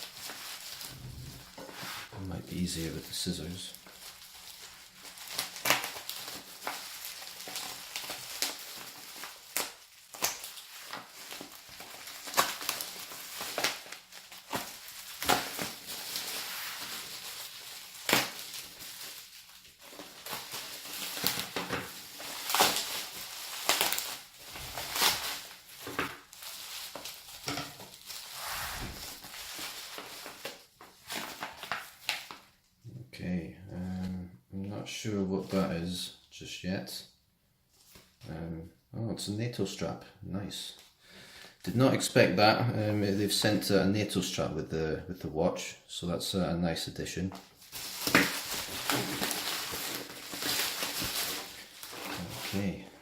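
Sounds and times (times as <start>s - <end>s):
bubble wrap crinkling and snapping: 0.0s - 32.7s, 37.8s - 38.3s, 47.3s - 53.0s.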